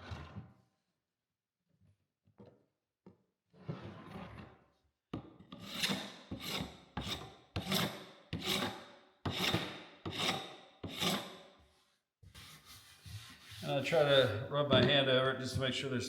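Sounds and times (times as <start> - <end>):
paint scraper rasping on wood: 5.6 - 11.3, 12.4 - 14.2.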